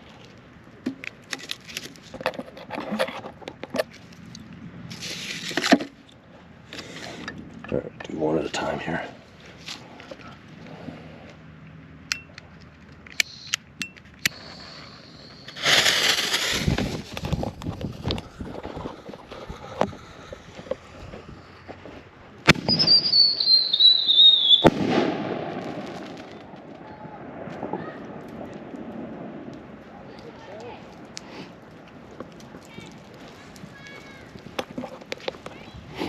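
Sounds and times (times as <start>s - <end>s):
fuse crackling: 12.3s - 35.7s
rumble: 14.2s - 22.7s
firework lift charge whoosh: 14.3s - 17.4s
firework shell bang: 22.5s - 23.6s, 24.6s - 26.6s
falling whistle: 22.7s - 24.7s.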